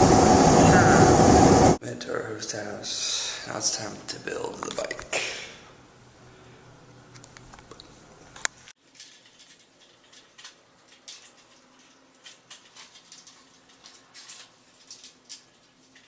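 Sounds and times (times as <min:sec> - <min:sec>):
low hum: 0:00.0 - 0:01.8.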